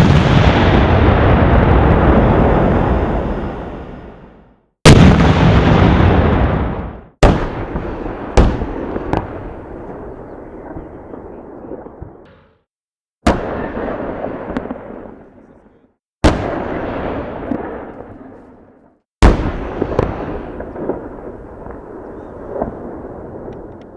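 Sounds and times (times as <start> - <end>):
heavy explosive blasts: 0.0 - 12.2, 16.2 - 18.2, 19.2 - 23.7.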